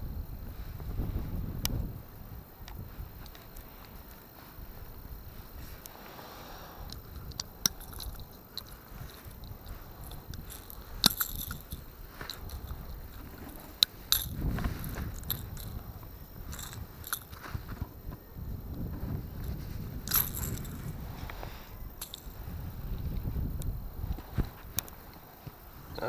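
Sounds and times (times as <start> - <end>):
rustle: 0.0 - 26.0
wind rumble on microphone: 0.0 - 26.0.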